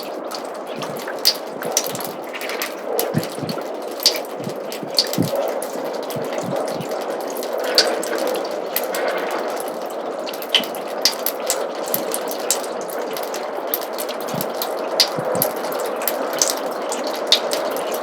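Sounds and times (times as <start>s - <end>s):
water drips: 0.0s - 18.0s
water trickling in gutter: 0.0s - 18.0s.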